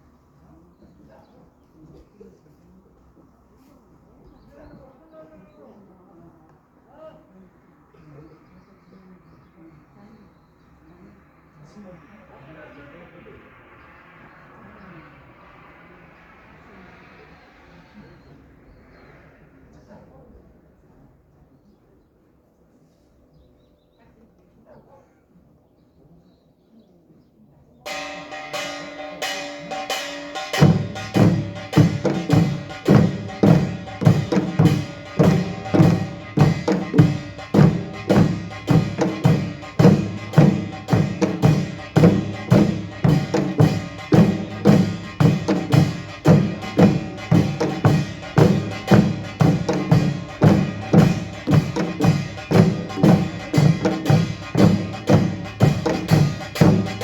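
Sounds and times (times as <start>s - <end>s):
drums beating: 27.9s - 57.0s
small gongs ringing: 27.9s - 57.0s.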